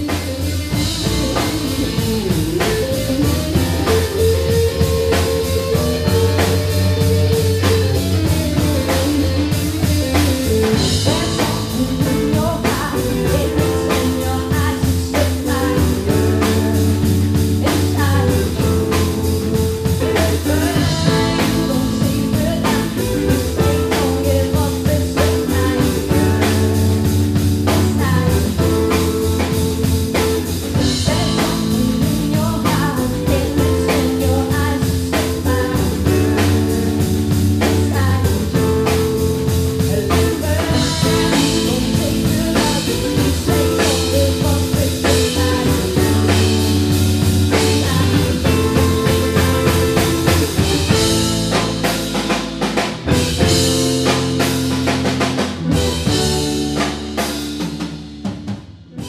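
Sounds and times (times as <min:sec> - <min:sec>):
fast drum-kit hits: 0:00.0 - 0:59.0
live band playing rock music: 0:00.0 - 0:59.0.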